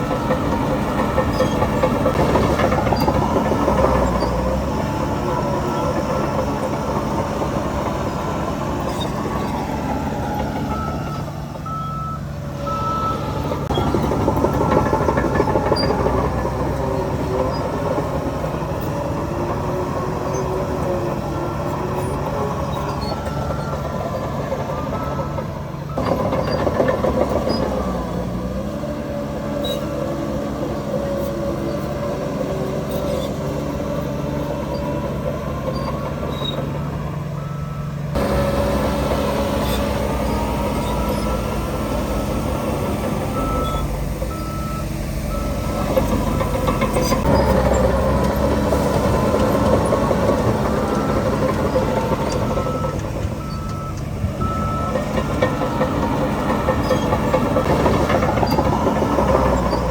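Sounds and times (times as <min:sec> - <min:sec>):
heavy diesel machinery running: 0:00.0 - 0:59.9
reversing alarm beeping: 0:02.6 - 0:16.9, 0:19.9 - 0:28.3, 0:37.4 - 0:59.9.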